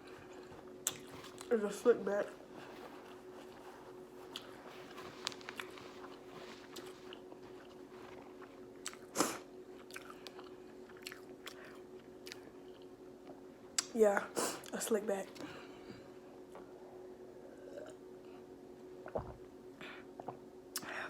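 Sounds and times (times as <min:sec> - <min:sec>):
person chewing food: 0:00.0 - 0:01.5, 0:02.4 - 0:13.9
faint steady hum: 0:00.0 - 0:21.0.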